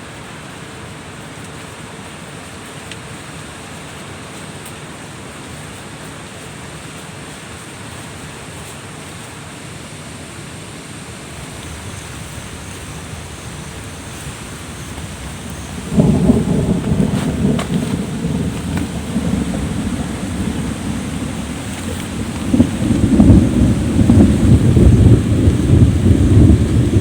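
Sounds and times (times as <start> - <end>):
rushing water and drizzling rain: 0.0 - 27.0
low thunder rumble: 11.3 - 27.0.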